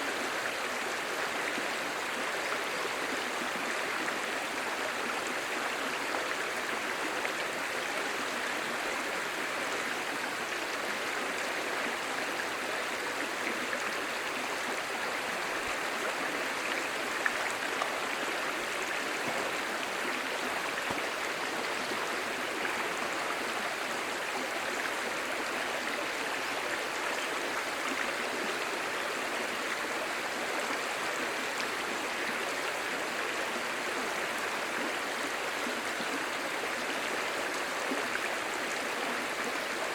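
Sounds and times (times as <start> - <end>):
stream babbling over stones: 0.0 - 39.9.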